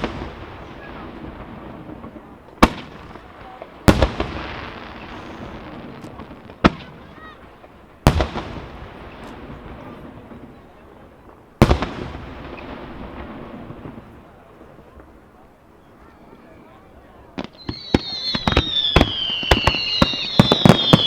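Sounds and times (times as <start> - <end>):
distant firework firing: 0.0 - 10.6, 11.6 - 15.1, 17.3 - 21.0
crowd hum: 0.0 - 21.0
firework shells bursting: 17.4 - 21.0.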